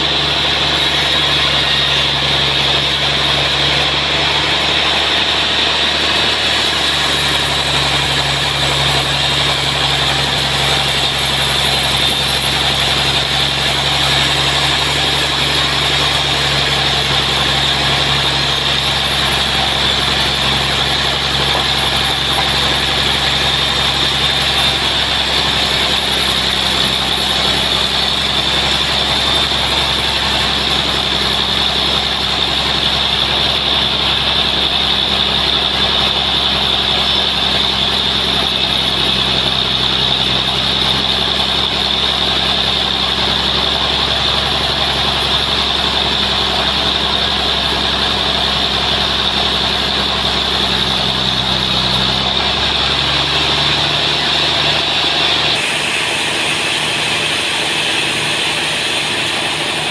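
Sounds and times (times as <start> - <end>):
saw whining and hissing: 0.0 - 59.9.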